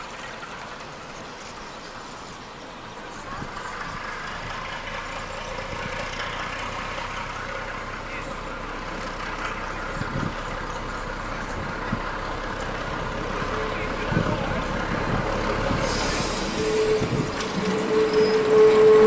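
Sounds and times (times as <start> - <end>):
steam hissing: 15.4 - 19.0.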